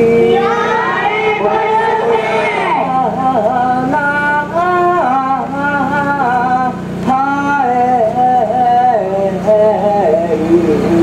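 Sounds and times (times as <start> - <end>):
steady low hum: 0.0 - 11.0
man singing folk melody: 2.8 - 11.0.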